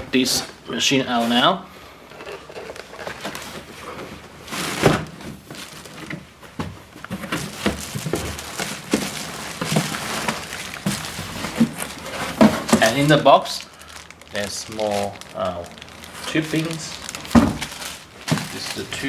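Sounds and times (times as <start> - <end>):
packaging rustling and scraping: 2.1 - 19.0
knocks and thump: 17.3 - 18.6.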